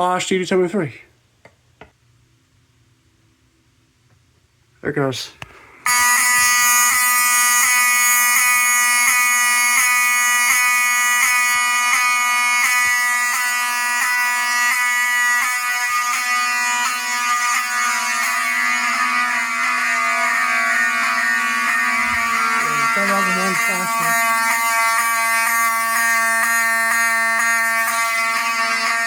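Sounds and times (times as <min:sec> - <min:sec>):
buzzy fire alarm horn: 0:05.9 - 0:29.0.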